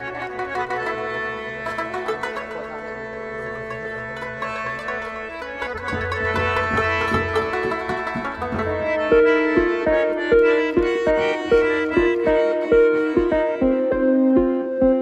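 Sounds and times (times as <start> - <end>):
plucked-string music over a pad: 0.0 - 15.0
steady low beat: 4.2 - 13.5.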